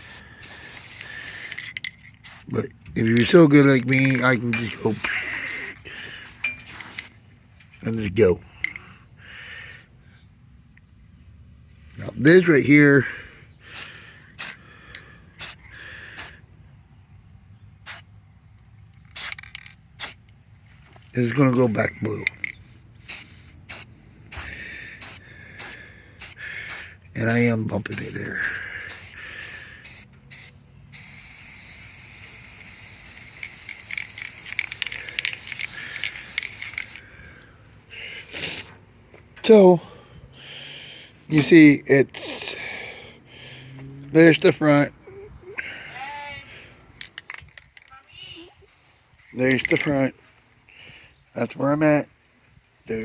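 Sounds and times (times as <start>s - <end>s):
paint sprayer hissing: 0.0s - 2.6s, 4.0s - 5.8s, 6.5s - 7.1s, 13.8s - 14.6s, 15.4s - 15.6s, 19.2s - 20.2s, 23.0s - 37.0s.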